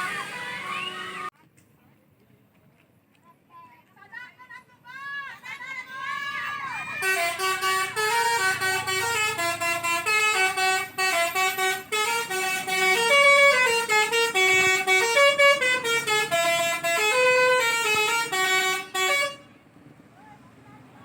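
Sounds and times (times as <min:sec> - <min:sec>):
multi-tone bus horn melody: 0:00.0 - 0:01.3, 0:07.0 - 0:19.7.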